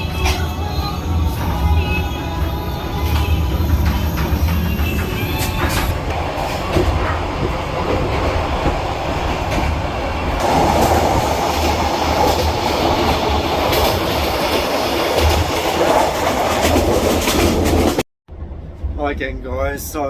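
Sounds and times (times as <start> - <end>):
train carriages rumbling: 0.0 - 20.0
wheels clacking over rail joints: 2.8 - 18.0.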